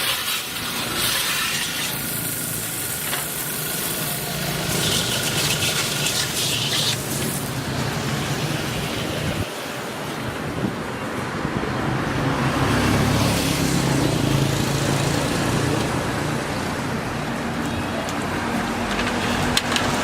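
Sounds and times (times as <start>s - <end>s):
road traffic noise: 0.0s - 20.0s
vehicle engine running close by: 12.2s - 16.8s.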